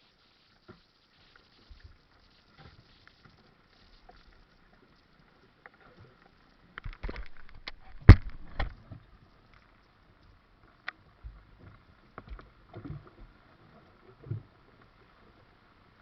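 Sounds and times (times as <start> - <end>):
knocks and thumps on a boat: 6.8 - 9.0.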